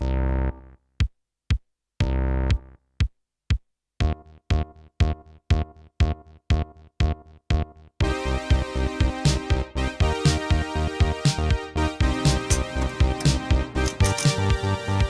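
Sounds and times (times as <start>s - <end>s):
drum-machine beat: 2.5s - 15.0s
synth chord: 8.0s - 15.0s.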